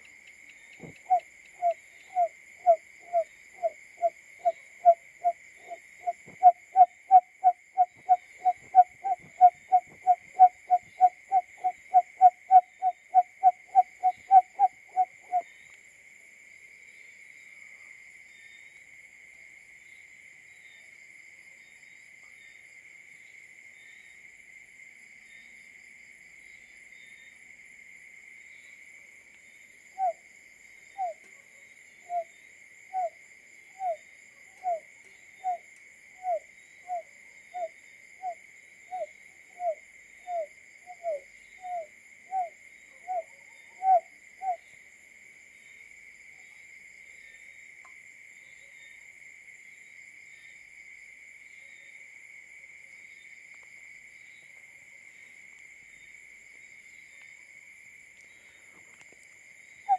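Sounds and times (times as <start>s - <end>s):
bird hooting calls: 0.8s - 15.4s, 30.0s - 30.2s, 32.9s - 33.2s, 33.8s - 34.0s, 36.2s - 44.6s.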